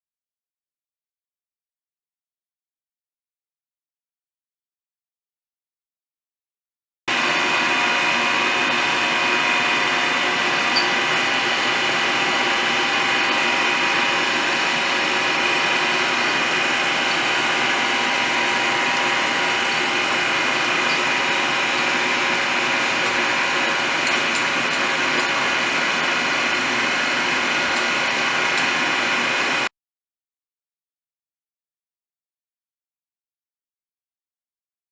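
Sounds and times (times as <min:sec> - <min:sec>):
surface grinder whining: 0:07.1 - 0:29.7.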